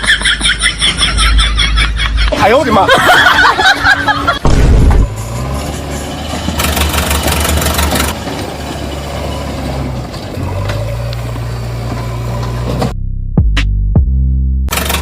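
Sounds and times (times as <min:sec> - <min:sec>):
engine running: 0:03.3 - 0:13.0, 0:14.7 - 0:15.0.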